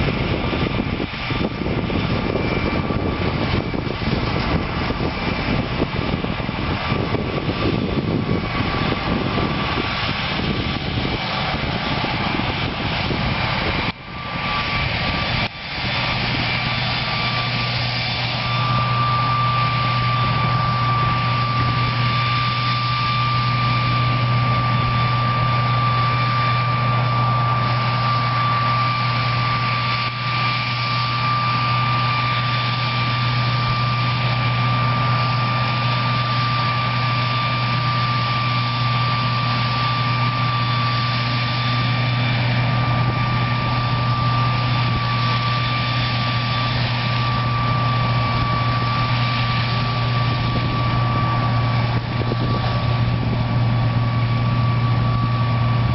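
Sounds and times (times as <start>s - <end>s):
deep engine hum: 0.0s - 55.9s
fan high whine: 0.0s - 55.9s.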